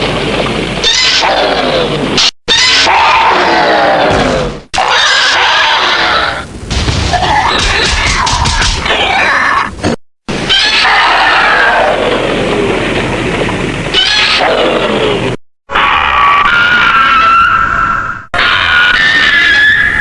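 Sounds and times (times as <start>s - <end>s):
monster roars: 2.6s - 6.4s.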